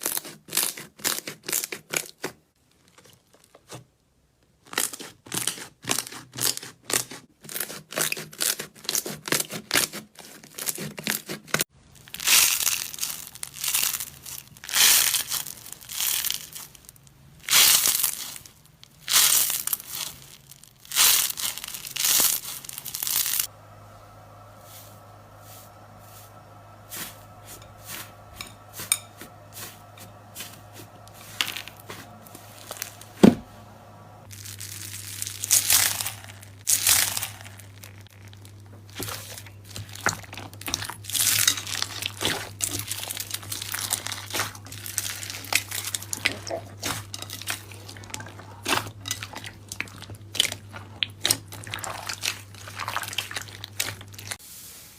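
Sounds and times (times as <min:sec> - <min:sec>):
slime squeezed and stretched: 0:47.6 - 0:54.4.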